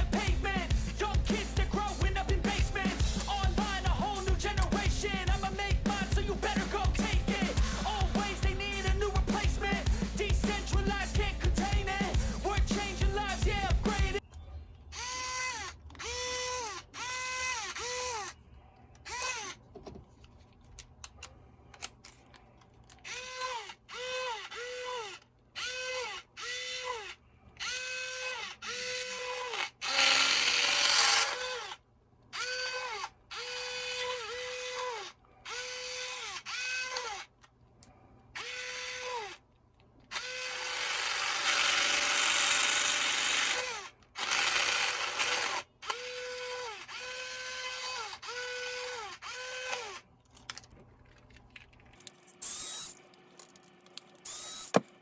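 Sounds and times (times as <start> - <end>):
electric screwdriver motor whining: 15.0 - 18.4, 19.0 - 19.6, 23.0 - 31.8, 32.4 - 37.3, 38.4 - 39.4, 40.1 - 50.0, 52.4 - 54.9.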